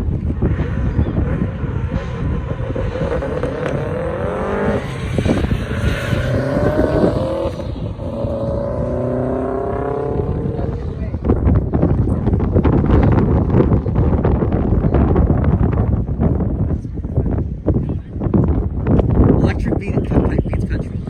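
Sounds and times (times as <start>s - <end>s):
car engine accelerating hard: 0.1s - 13.8s.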